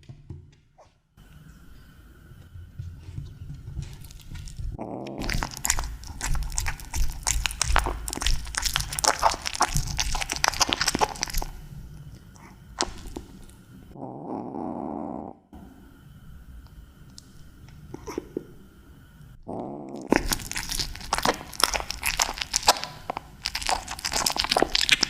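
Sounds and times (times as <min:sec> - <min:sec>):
low steady hum: 0:00.0 - 0:25.0
kittens chewing wetly: 0:03.6 - 0:13.9, 0:19.5 - 0:25.0.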